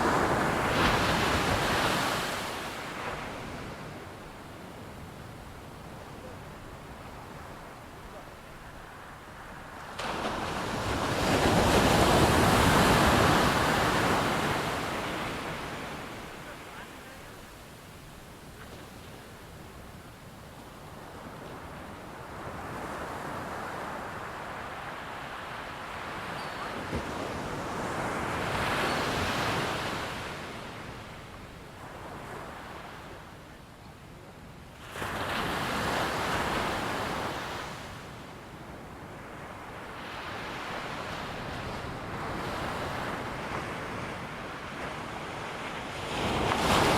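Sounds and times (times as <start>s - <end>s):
ocean wave breaking on beach: 0.0s - 4.4s, 5.8s - 19.8s
ocean waves breaking on beach: 0.0s - 33.6s, 34.2s - 46.9s.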